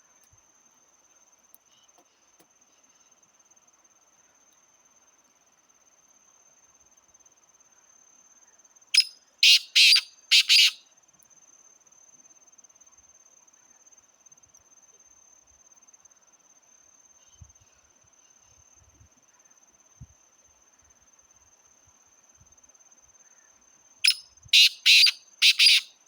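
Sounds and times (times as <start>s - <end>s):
bird calling harsh grating notes: 9.4s - 10.8s, 24.6s - 25.9s.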